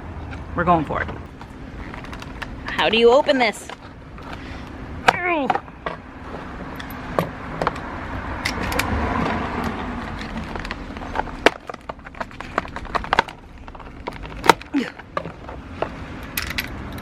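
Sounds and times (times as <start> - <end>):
hands prying at packaging: 10.1 - 16.0.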